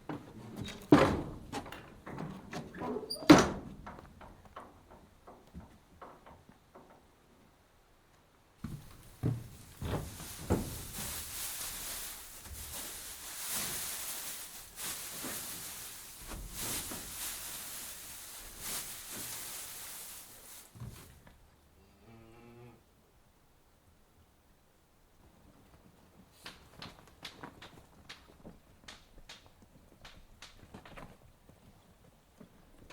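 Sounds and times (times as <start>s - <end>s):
hooves and gates clattering: 0.0s - 7.4s, 25.6s - 32.9s.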